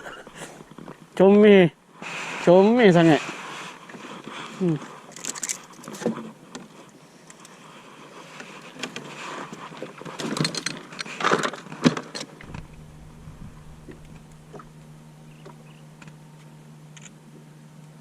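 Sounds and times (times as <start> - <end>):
steady low hum: 12.4 - 18.0.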